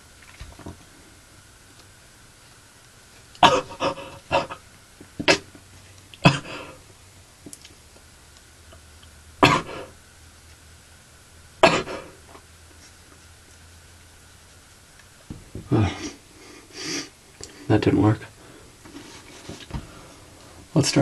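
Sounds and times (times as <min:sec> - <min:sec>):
boy coughing and clearing throat: 0:03.4 - 0:04.6, 0:06.2 - 0:06.7, 0:09.4 - 0:09.9, 0:11.6 - 0:12.1.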